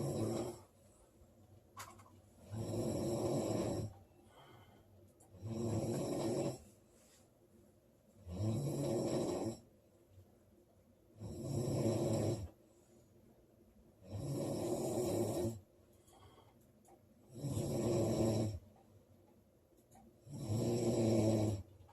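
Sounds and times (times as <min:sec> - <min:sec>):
woman snoring loudly: 0:00.0 - 0:00.6, 0:02.5 - 0:04.0, 0:05.4 - 0:06.6, 0:08.2 - 0:09.6, 0:11.2 - 0:12.5, 0:14.0 - 0:15.6, 0:17.3 - 0:18.6, 0:20.2 - 0:21.6.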